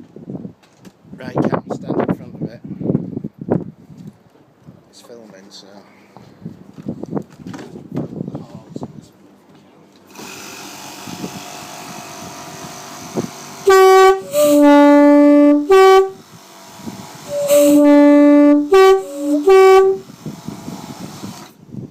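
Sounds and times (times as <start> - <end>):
two-tone locomotive air horn: 13.6 - 20.1.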